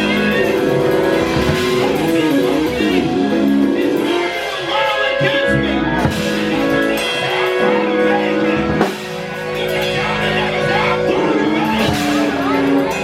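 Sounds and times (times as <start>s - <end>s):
live band with guitar and drums: 0.0s - 13.0s
voices singing along: 0.0s - 13.0s.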